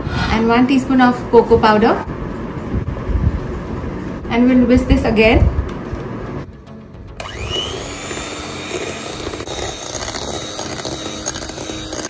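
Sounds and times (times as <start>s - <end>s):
electric hand mixer whining: 7.2s - 12.0s.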